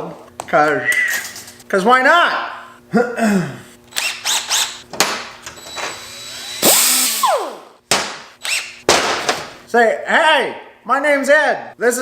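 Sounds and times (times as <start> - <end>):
power tool motor spinning: 3.9 - 4.8, 5.5 - 7.6, 8.4 - 8.8.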